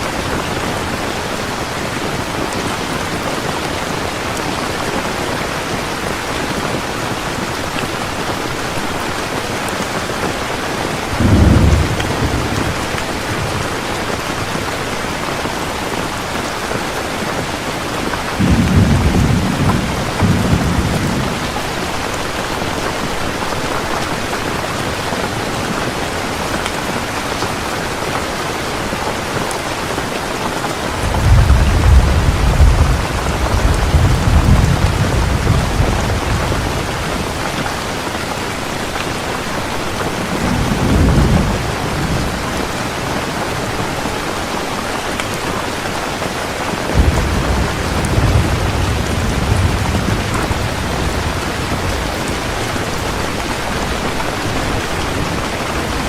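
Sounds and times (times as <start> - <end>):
heavy rain falling: 0.0 - 56.0
thunder rumbling: 11.0 - 14.2, 18.3 - 22.4, 30.9 - 37.7, 40.0 - 43.6, 46.9 - 56.0.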